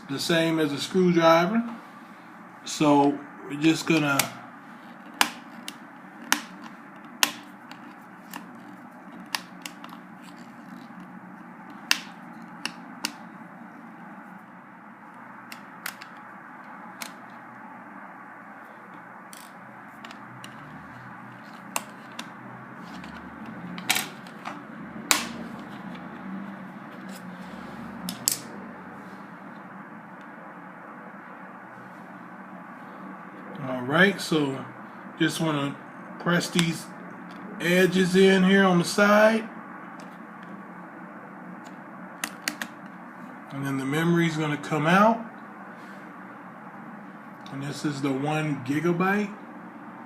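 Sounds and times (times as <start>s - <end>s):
sharp clicks and taps on plastic: 5.0s - 11.1s, 11.7s - 13.2s, 15.4s - 16.3s, 21.4s - 26.1s, 41.6s - 42.9s.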